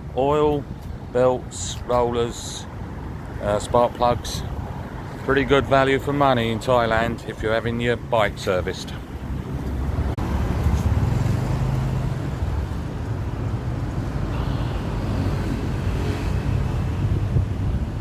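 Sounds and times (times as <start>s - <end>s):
road noise: 0.0s - 18.0s
wind on microphone: 12.2s - 18.0s.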